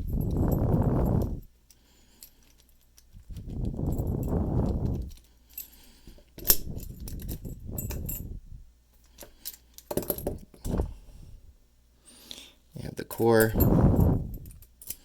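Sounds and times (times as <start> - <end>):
keys and padlock clinking: 0.0 - 8.4, 13.3 - 15.0.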